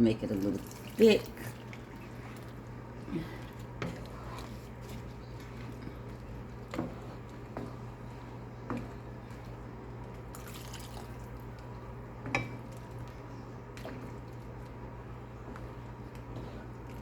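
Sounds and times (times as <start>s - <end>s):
steady low hum: 0.0s - 17.0s
spoon stirring sauce in a pot: 3.6s - 10.4s.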